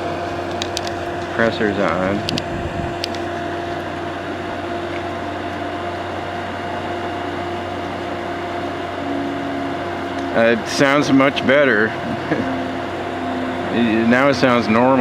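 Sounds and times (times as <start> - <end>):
window air conditioner humming: 0.0 - 15.0.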